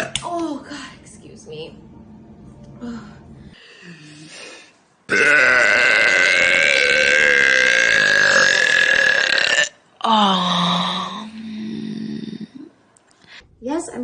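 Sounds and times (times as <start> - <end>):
long loud belch: 5.1 - 12.5.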